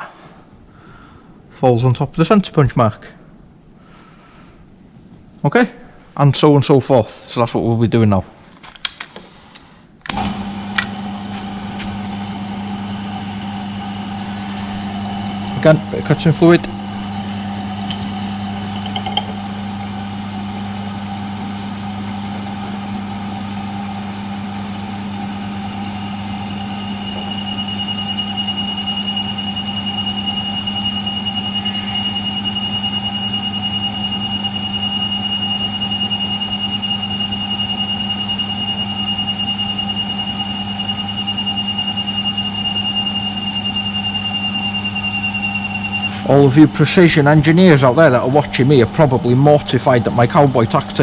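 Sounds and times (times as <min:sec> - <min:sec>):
milling machine spindle humming: 0:10.1 - 0:51.0
high-pitched cutting squeal: 0:10.3 - 0:51.0.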